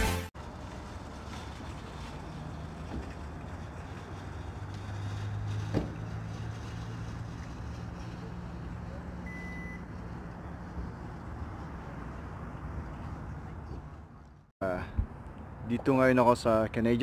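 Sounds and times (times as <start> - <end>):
low engine hum: 0.4 - 15.4
short electronic beep: 9.3 - 9.9.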